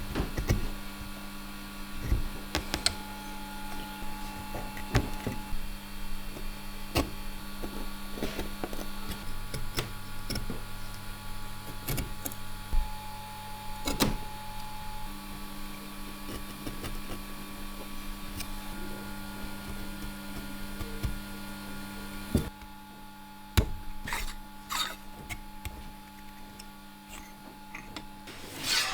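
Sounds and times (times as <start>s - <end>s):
small electric motor humming: 0.0s - 28.9s
knocks and scrapes: 27.1s - 28.9s.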